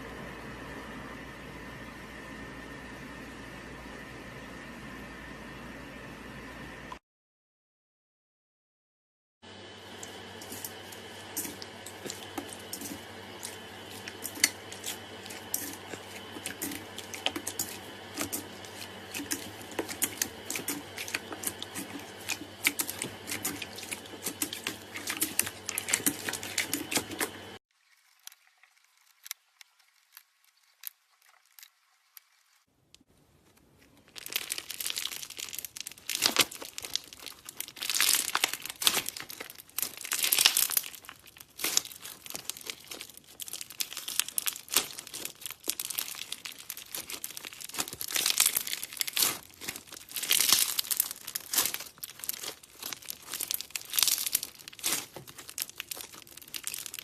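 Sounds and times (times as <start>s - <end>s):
slime squished by hand: 9.9s - 27.6s, 34.0s - 57.0s.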